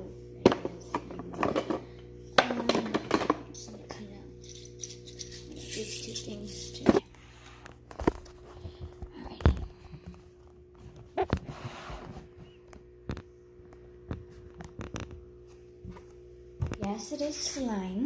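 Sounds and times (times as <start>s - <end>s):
faint steady hum: 0.0s - 18.0s
objects knocking and clicking: 2.4s - 3.5s.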